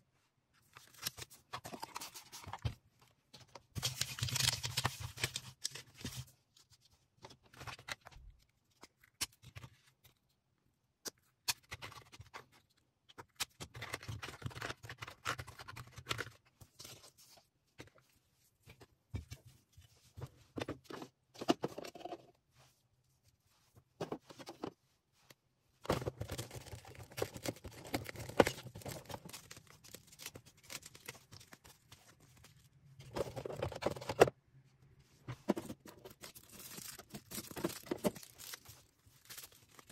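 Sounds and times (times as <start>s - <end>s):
plastic and paper crinkling: 0.6s - 10.1s, 25.9s - 34.3s, 35.4s - 39.9s.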